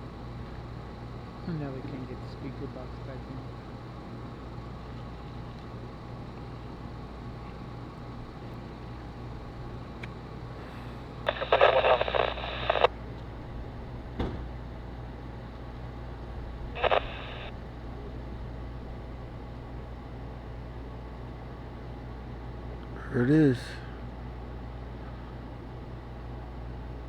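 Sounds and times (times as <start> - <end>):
low steady hum: 0.0 - 27.0
scanner radio squelch bursts: 10.6 - 12.9, 16.7 - 17.6.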